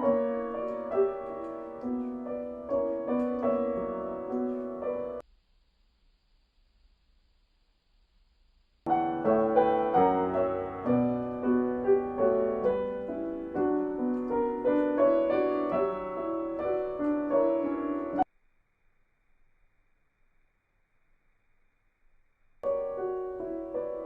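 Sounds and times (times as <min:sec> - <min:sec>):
piano playing: 0:00.0 - 0:05.2, 0:08.9 - 0:18.3, 0:22.6 - 0:24.0.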